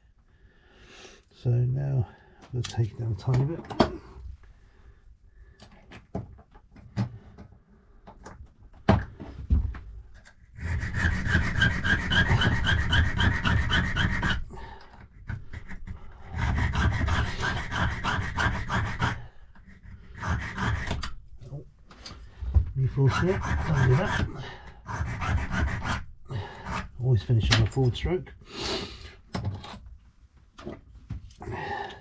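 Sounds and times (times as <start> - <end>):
hand file rasping on metal: 10.6 - 21.6, 22.8 - 27.1.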